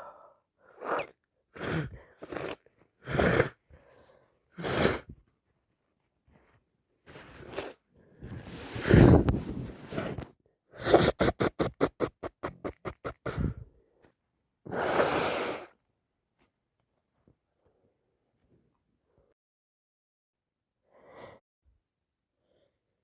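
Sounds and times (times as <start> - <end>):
person sneezing: 4.6 - 5.1, 10.8 - 13.6
short sharp breaths: 7.0 - 10.2.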